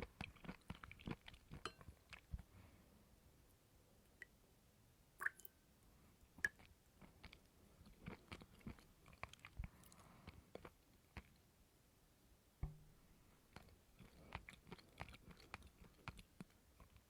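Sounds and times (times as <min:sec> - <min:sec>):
chewing coconut crunches: 0:06.6 - 0:11.4, 0:13.5 - 0:17.0.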